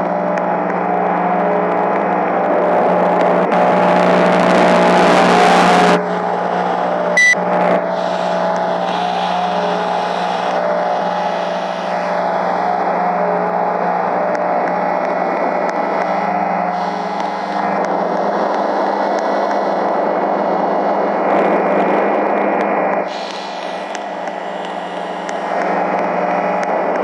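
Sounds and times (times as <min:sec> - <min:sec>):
machine droning hum: 0:03.5 - 0:20.5, 0:23.1 - 0:27.0
rush of hiss: 0:05.4 - 0:07.2, 0:07.8 - 0:12.9, 0:23.1 - 0:26.3
short sharp beep: 0:07.2 - 0:07.4.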